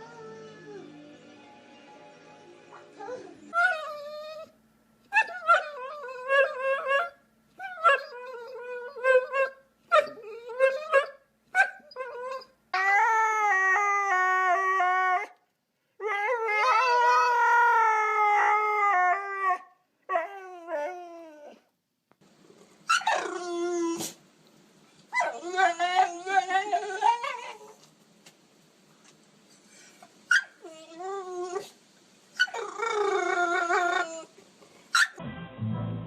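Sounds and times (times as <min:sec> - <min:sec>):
dog howling and whining: 0:03.0 - 0:04.5, 0:05.1 - 0:15.4, 0:16.0 - 0:21.7, 0:22.9 - 0:24.2, 0:25.1 - 0:27.9, 0:30.3 - 0:31.8, 0:32.4 - 0:34.4.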